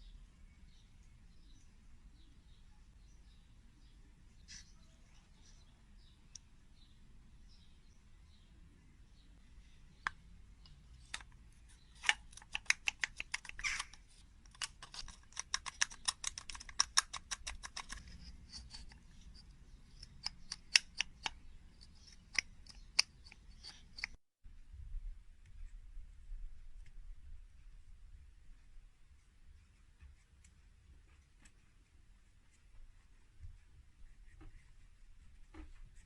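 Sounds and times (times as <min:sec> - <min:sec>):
sharp clicks and taps: 0:12.0 - 0:19.0, 0:19.9 - 0:24.2.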